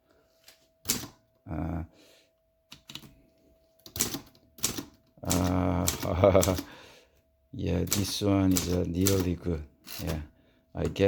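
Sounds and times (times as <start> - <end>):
typewriter keys clacking: 0.9 - 1.2, 3.8 - 6.7, 7.8 - 10.2.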